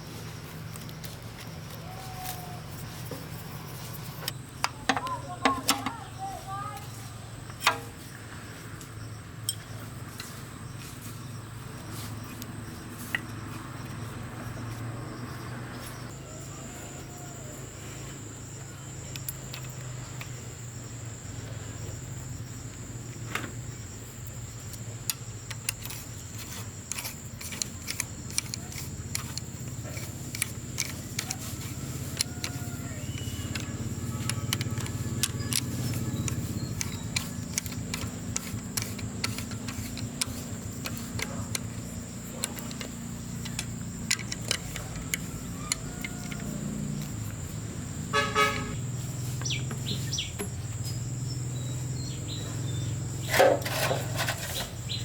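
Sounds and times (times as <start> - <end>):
small clicks and taps: 32.1 - 47.2
short horn toot: 48.1 - 48.8.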